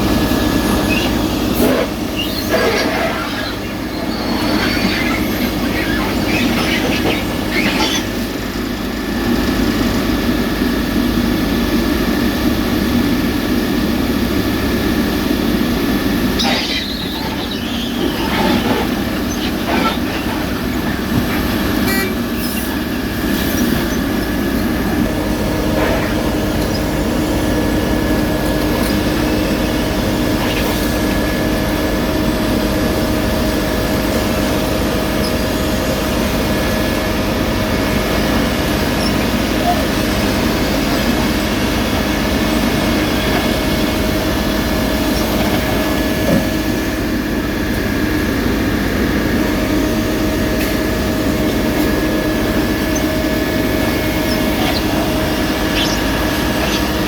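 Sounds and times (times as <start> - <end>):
diesel engine drone with whine: 0.0 - 57.0
metallic clanks and squeaks: 0.8 - 8.2, 16.4 - 24.7, 54.1 - 57.0.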